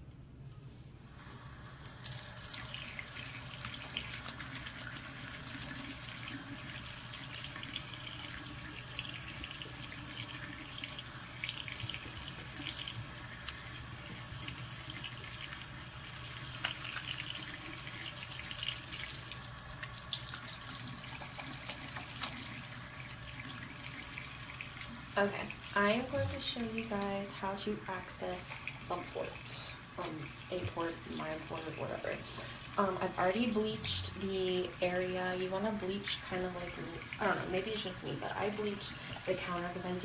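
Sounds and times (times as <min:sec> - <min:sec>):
tap running into sink: 0:20.8 - 0:22.6.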